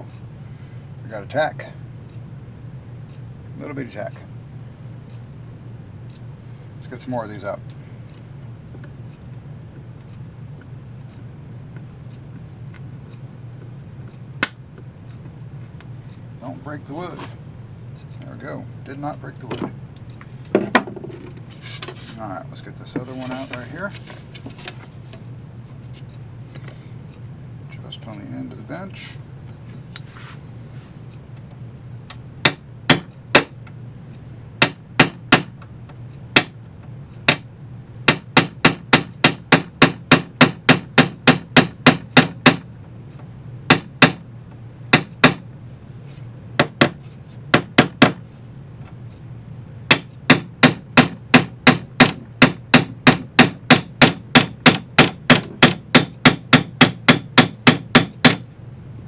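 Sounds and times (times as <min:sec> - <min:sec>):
steady low hum: 0:00.0 - 0:59.0
hammer tapping: 0:32.4 - 0:33.6, 0:34.6 - 0:35.6, 0:38.1 - 0:42.6, 0:43.7 - 0:44.2, 0:44.9 - 0:45.4, 0:46.6 - 0:48.2, 0:49.9 - 0:58.4.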